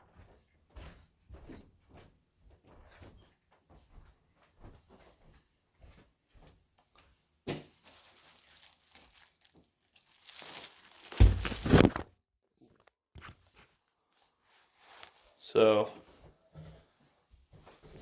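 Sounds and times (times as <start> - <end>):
paper towel roll handled: 7.5 - 12.0
paper ripping and crumpling: 7.7 - 12.1.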